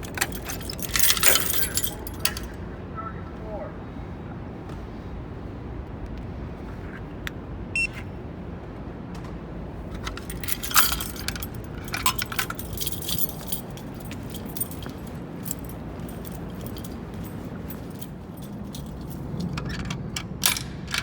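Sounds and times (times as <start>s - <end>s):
keys jangling: 0.0s - 2.6s, 9.9s - 21.0s.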